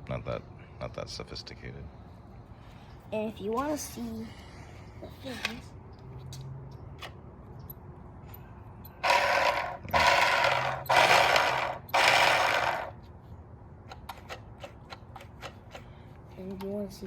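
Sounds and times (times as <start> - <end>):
small electric motor whirring: 9.0 - 13.0.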